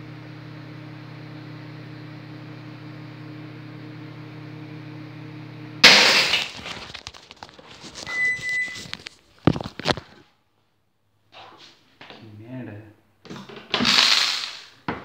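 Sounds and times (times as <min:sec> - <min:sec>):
microwave oven humming: 0:00.0 - 0:05.9
loud glass crash: 0:05.8 - 0:06.6
short high beep: 0:08.1 - 0:08.9.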